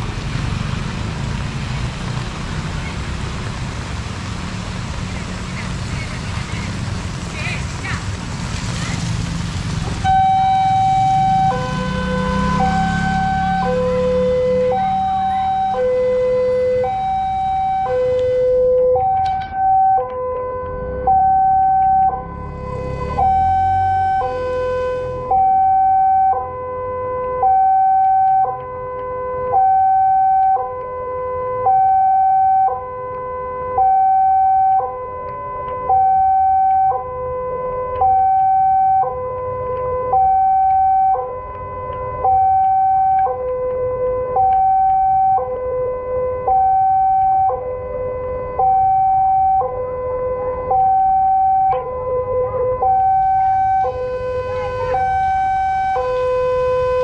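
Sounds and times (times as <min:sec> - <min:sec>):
level crossing two-tone alarm: 0:10.0 - 0:26.7, 0:27.3 - 0:30.9, 0:31.6 - 0:32.9, 0:33.7 - 0:37.1, 0:38.0 - 0:43.6, 0:44.3 - 0:45.5, 0:46.5 - 0:47.6, 0:48.5 - 0:49.8, 0:50.6 - 0:51.9, 0:52.5 - 0:57.0.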